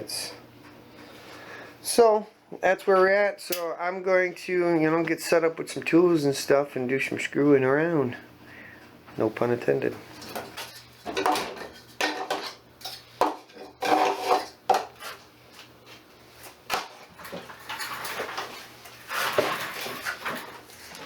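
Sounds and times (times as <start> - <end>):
hard objects clattering: 10.2 - 15.2, 16.7 - 21.0.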